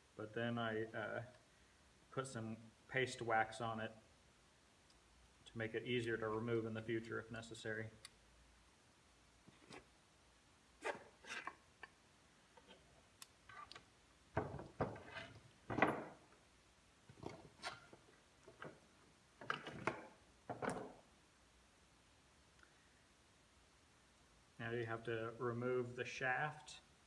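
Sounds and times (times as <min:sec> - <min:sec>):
knocks and clunks of parts: 0:13.5 - 0:16.4, 0:17.1 - 0:21.0.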